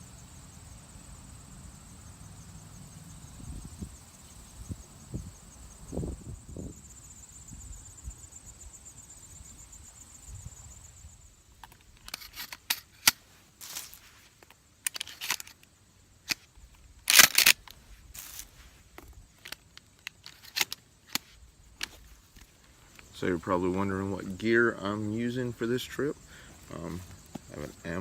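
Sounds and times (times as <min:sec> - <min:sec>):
crickets trilling: 0:00.0 - 0:28.0
handling clicks and rustles: 0:11.6 - 0:24.4, 0:25.8 - 0:28.0.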